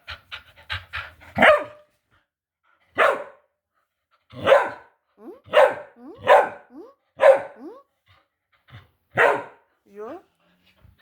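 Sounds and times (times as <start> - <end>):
dog barking: 1.4 - 1.8, 3.0 - 3.5, 4.4 - 7.8, 9.2 - 9.7.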